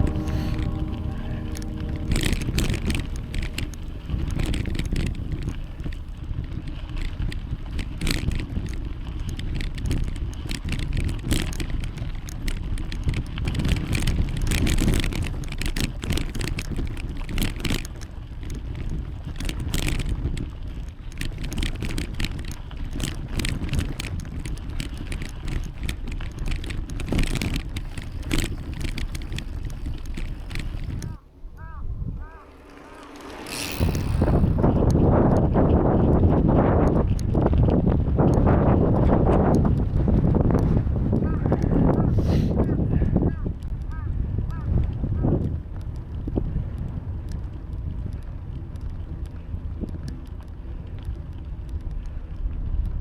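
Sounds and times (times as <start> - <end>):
bike rattling over bumps: 0.0 - 42.0
bicycle tyre rumble: 0.0 - 53.0
wind buffeting microphone: 0.0 - 53.0.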